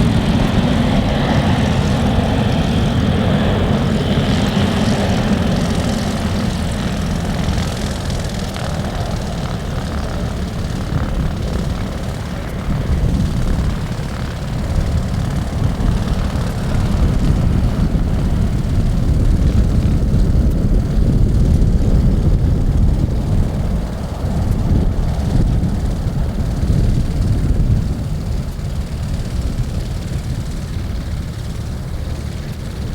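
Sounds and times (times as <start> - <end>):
jet engines roaring on take-off: 0.0 - 32.9.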